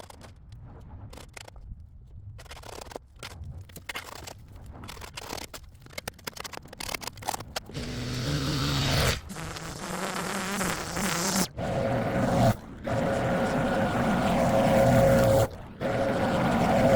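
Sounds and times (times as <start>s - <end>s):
rapid scraping and scratching: 0.0s - 16.9s
small engine running: 7.7s - 16.9s.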